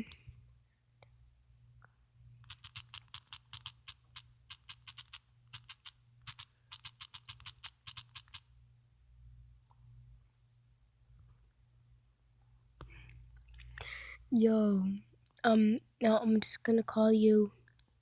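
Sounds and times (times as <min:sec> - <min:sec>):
keyboard typing clicks: 0:02.4 - 0:08.4.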